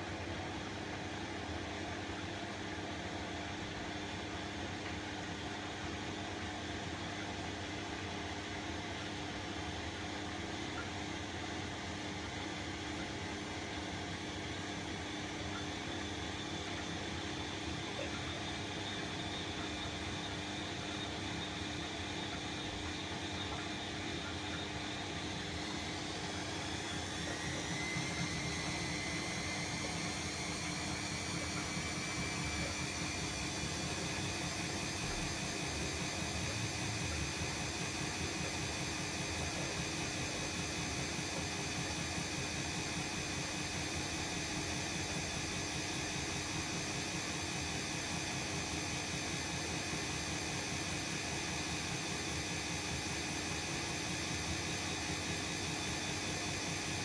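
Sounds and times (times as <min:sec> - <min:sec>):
washing machine spinning: 0:00.0 - 0:57.0
motor whine rising in pitch: 0:18.1 - 0:57.0.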